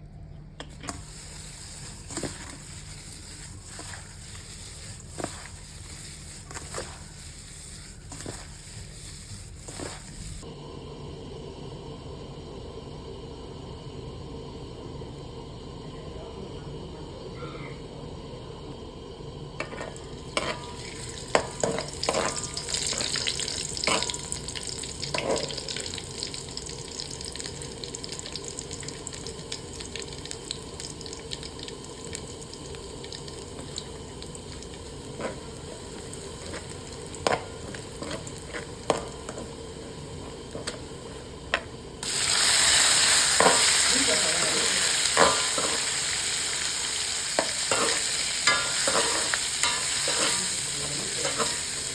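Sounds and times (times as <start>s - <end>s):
noodles sizzling in a pan: 0.8s - 10.6s, 19.1s - 51.9s
utensil scraping a pan: 0.9s - 10.4s, 19.6s - 24.4s, 47.3s - 51.8s.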